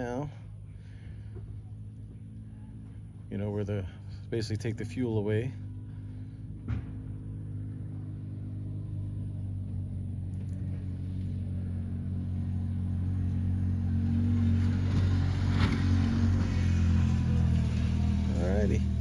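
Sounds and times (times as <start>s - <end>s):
vehicle engine humming: 0.0s - 19.0s.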